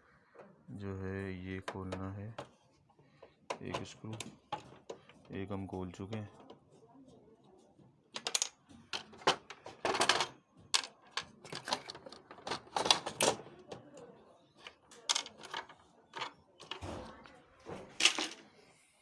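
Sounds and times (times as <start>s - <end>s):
plastic and metal parts clicking: 8.2s - 17.4s.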